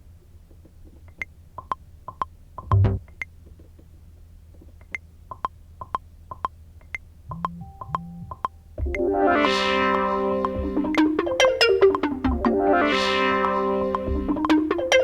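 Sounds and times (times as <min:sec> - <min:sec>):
metronome clicks: 0:01.1 - 0:03.4, 0:04.8 - 0:09.2, 0:09.9 - 0:12.6, 0:13.4 - 0:15.0.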